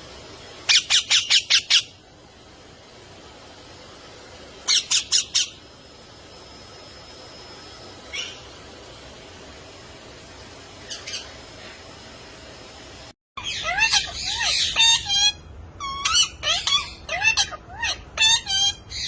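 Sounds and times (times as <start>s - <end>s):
parrots squawking: 0.7s - 2.0s, 4.6s - 5.6s, 8.1s - 8.5s, 10.9s - 11.4s, 13.4s - 19.0s.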